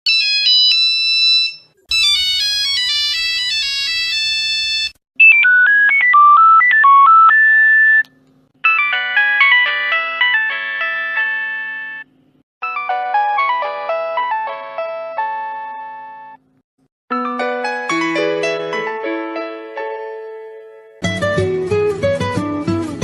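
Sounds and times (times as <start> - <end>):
mobile phone ringtones: 0.1 - 8.0, 8.6 - 13.2.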